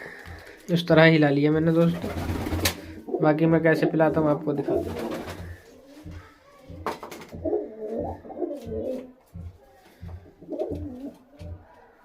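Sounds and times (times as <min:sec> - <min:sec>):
pigeons cooing: 0:02.0 - 0:06.3, 0:07.3 - 0:09.2, 0:10.2 - 0:12.0.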